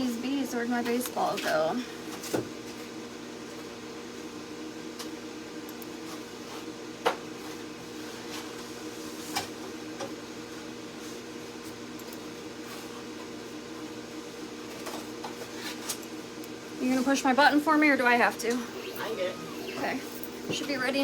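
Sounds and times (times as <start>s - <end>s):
cutting machine humming: 18.2s - 21.0s.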